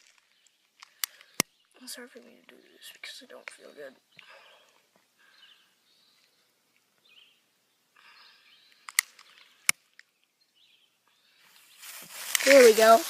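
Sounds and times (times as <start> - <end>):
faint bird chirps: 0.2 - 12.6
sharp clicks: 0.8 - 1.5, 8.7 - 10.1.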